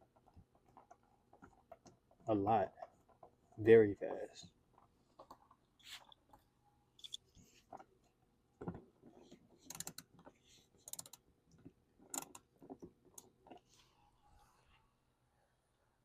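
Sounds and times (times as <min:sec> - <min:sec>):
small parts clicking: 0:07.0 - 0:07.2, 0:09.6 - 0:13.3.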